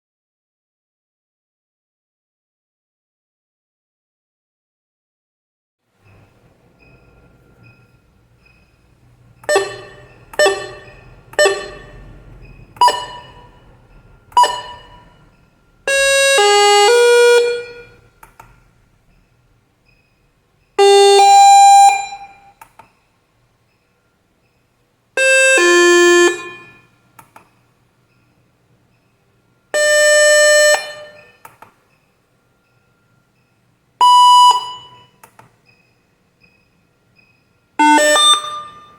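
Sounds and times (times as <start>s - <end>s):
held electronic tone: 6.1s - 18.2s, 19.1s - 22.6s, 25.2s - 26.9s, 32.5s - 38.9s
single dings: 9.4s - 12.2s
electronic chime tunes: 9.5s - 15.8s.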